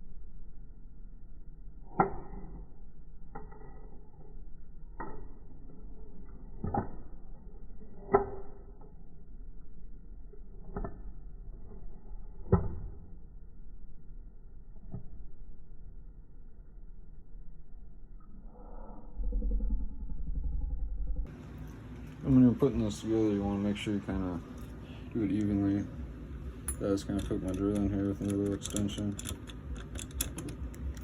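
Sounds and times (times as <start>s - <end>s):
metallic clicks and knocks of doorknob: 27.5s - 31.0s.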